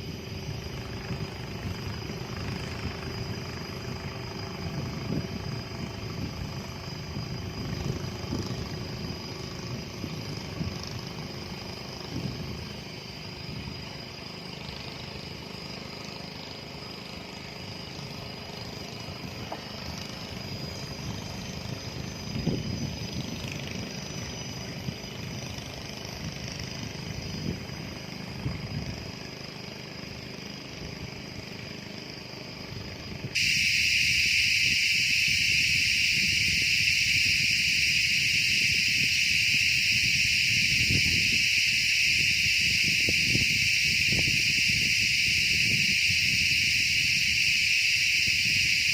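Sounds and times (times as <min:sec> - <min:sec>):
faint high whine: 0:00.0 - 0:48.9
high-pitched insect drone: 0:00.0 - 0:48.9
low engine-like rumble: 0:00.0 - 0:48.9.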